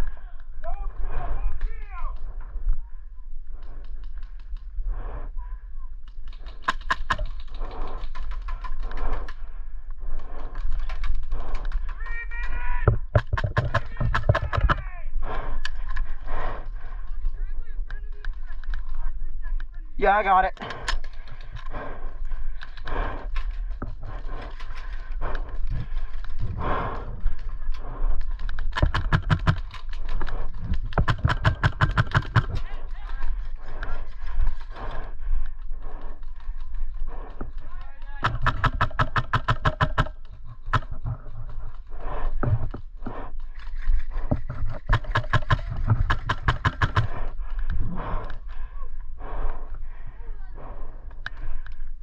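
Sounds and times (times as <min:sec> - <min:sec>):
heavy breathing: 0:00.0 - 0:05.8, 0:06.4 - 0:12.1, 0:12.9 - 0:52.0
rapid sharp clicks: 0:06.0 - 0:48.5
running footsteps: 0:20.6 - 0:48.6
gear rustling and scraping: 0:40.1 - 0:46.7.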